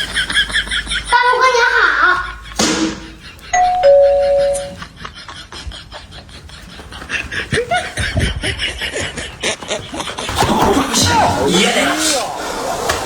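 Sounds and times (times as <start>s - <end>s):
voices: 0.0s - 4.8s, 6.6s - 13.0s
laughter: 0.0s - 10.3s
two-note doorbell chime: 3.6s - 4.8s.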